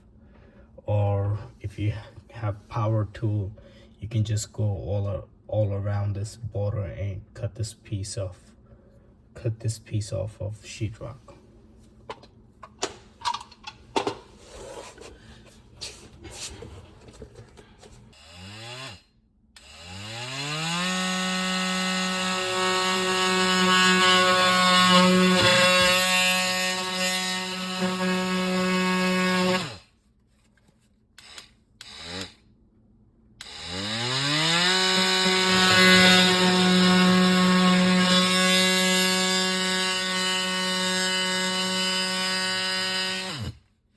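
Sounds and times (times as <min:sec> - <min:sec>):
power tool cutting drywall: 0:18.2 - 0:29.9, 0:31.2 - 0:32.4, 0:33.4 - 0:43.7.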